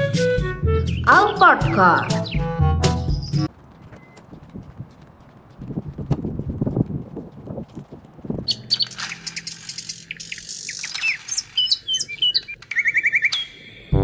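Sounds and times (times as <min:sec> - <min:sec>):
songbirds chirping: 0:00.8 - 0:03.5, 0:08.5 - 0:14.0.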